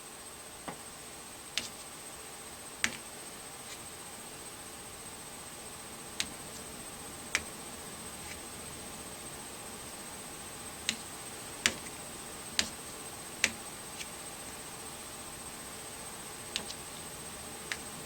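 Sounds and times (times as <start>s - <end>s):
faint high whine and hiss: 0.0s - 18.0s
pointer tapping on wall: 10.8s - 12.0s, 13.4s - 13.6s.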